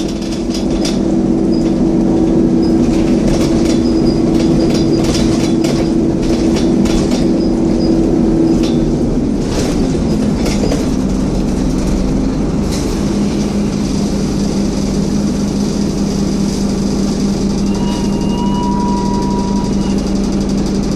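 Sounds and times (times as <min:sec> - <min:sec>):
diesel bus engine rumble: 0:00.0 - 0:20.9
engine cooling fan whine: 0:00.0 - 0:20.9
thin high squeal: 0:17.7 - 0:20.1.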